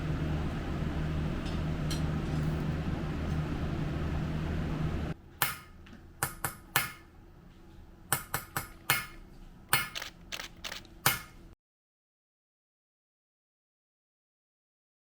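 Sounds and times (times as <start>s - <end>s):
motor hum: 0.0s - 5.2s, 9.8s - 11.0s.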